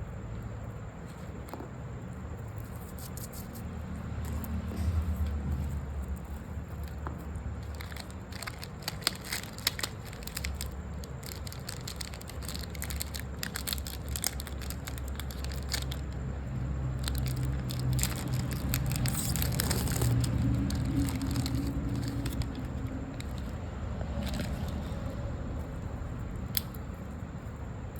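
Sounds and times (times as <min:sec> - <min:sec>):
plastic wrapper crinkling: 0:06.3 - 0:24.9.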